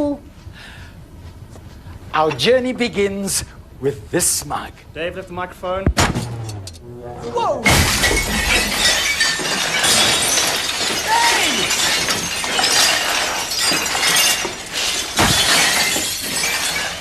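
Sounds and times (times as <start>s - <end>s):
glass and crockery shattering: 7.6s - 17.0s.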